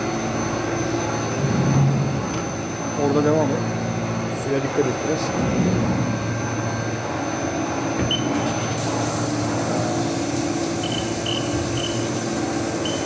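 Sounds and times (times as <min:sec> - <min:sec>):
machining center whirring: 0:00.0 - 0:13.0
coolant hiss: 0:08.4 - 0:13.0.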